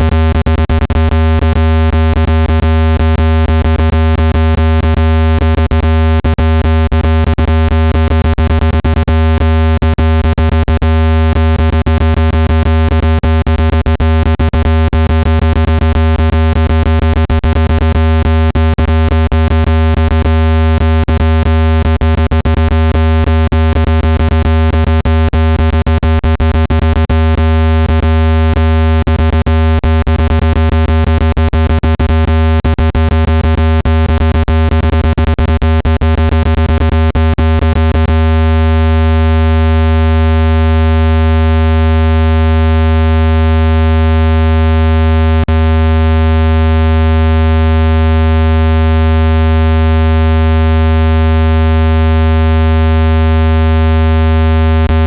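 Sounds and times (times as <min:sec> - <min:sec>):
buzzy low electronic tone: 0:35.8 - 0:49.6.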